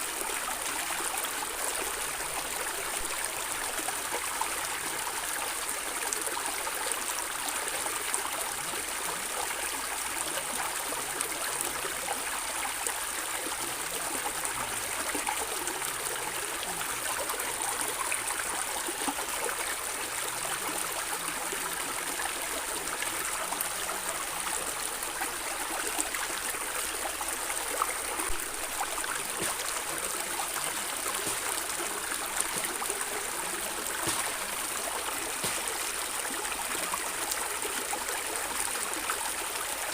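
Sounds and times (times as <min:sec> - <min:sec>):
stream water gurgling: 0:00.0 - 0:39.9
small water splashes: 0:25.9 - 0:37.7.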